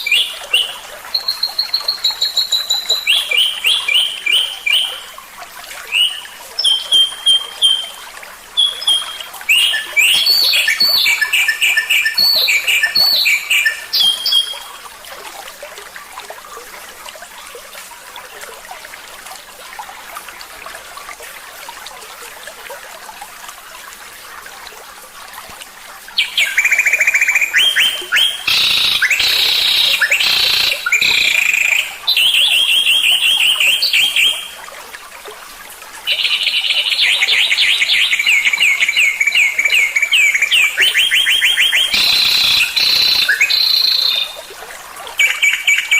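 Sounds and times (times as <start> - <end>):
songbird singing: 0.0 - 5.1, 5.8 - 14.8, 26.2 - 34.6, 36.1 - 44.5, 45.2 - 45.9.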